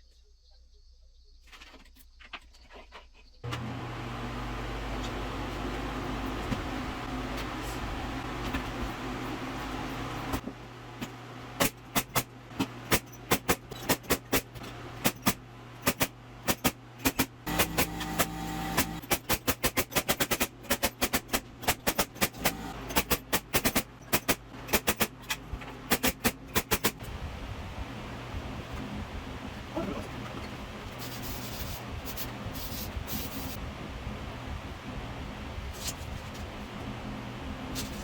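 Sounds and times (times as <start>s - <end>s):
steady low hum: 3.4s - 38.0s.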